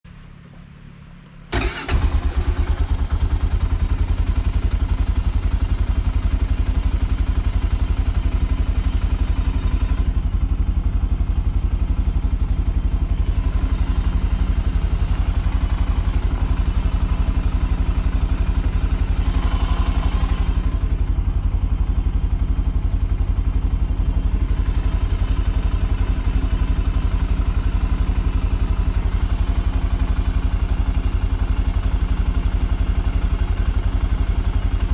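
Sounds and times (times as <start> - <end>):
atv engine starting and running: 1.5 - 34.9.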